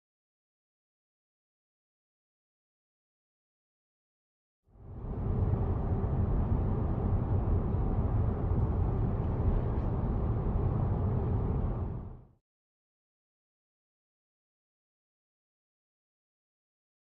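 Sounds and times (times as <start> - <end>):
faint steady hum: 4.8 - 12.3
synthesized low rumbling drone: 4.8 - 12.3.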